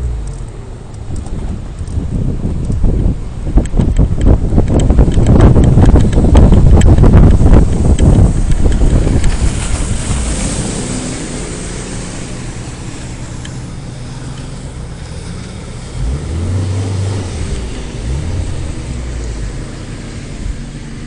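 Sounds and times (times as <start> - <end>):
off-road vehicle engines running: 0.0 - 21.0
engine revving: 4.6 - 21.0.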